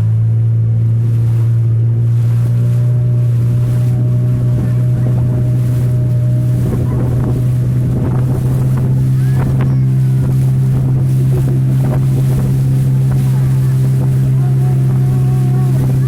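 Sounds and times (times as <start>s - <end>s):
motorboat engine droning: 0.0s - 16.0s.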